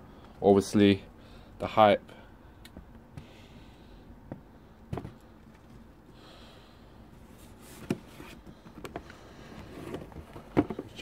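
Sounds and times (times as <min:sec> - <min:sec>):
faint breath: 0:01.1 - 0:05.4, 0:06.1 - 0:07.2
handling noises: 0:04.3 - 0:06.1, 0:07.2 - 0:11.0.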